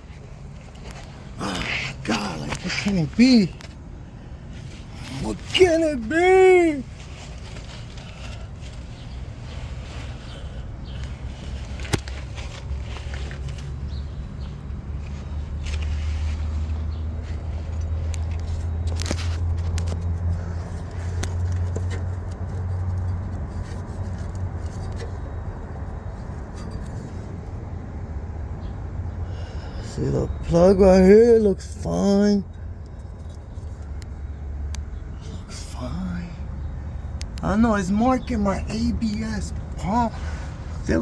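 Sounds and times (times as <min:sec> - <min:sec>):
vehicle engine rumble: 0:00.0 - 0:41.0
sharp clicks of handling: 0:11.7 - 0:12.7.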